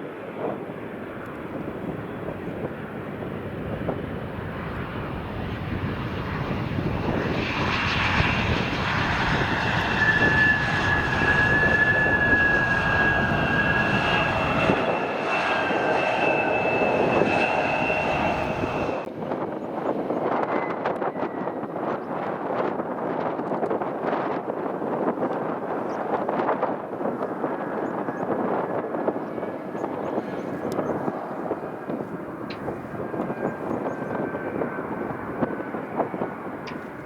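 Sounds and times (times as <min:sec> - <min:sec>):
jet engines rushing noise: 0:00.0 - 0:22.8, 0:25.0 - 0:37.0
high-pitched engine whine: 0:04.2 - 0:19.2.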